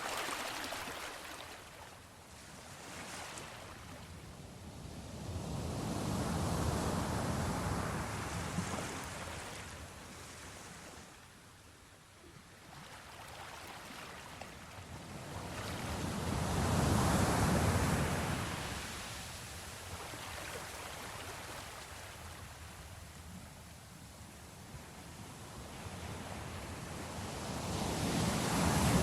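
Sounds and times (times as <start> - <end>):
wave breaking: 0.0 - 1.7.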